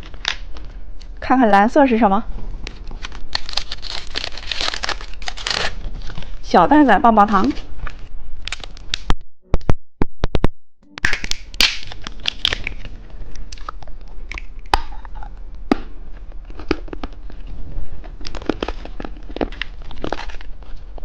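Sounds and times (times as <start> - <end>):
plastic wrapper crinkling: 2.7 - 6.5, 11.0 - 13.8, 16.4 - 21.0
sharp clicks and taps: 8.9 - 11.8.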